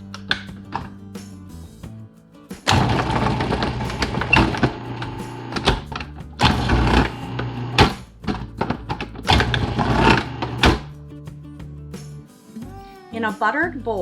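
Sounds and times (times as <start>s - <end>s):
food processor motor slicing: 2.7s - 10.9s.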